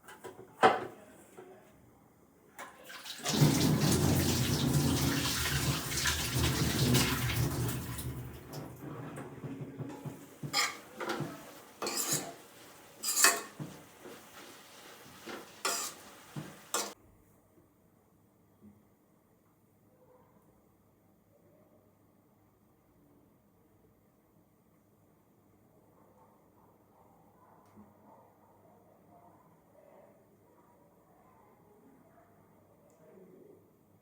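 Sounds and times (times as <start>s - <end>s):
water running from tap: 2.7s - 17.0s
dishes clinking and knocking: 6.5s - 14.5s, 15.1s - 17.0s.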